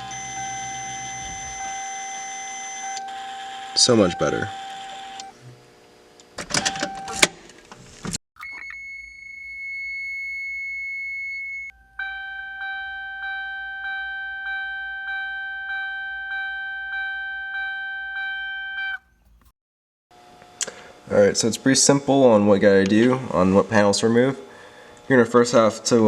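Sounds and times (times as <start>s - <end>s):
door chime dinging: 0.0s - 5.3s, 6.6s - 7.3s, 8.4s - 19.1s
high-pitched warning buzzer: 0.0s - 5.4s, 11.6s - 19.0s.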